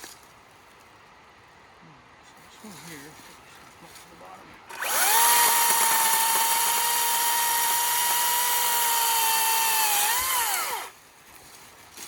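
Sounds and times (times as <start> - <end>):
battery chainsaw whining: 4.7 - 11.0.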